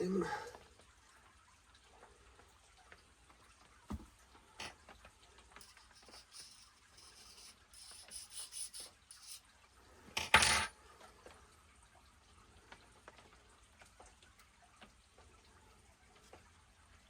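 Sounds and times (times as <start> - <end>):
scraping and rubbing: 5.6 - 9.4.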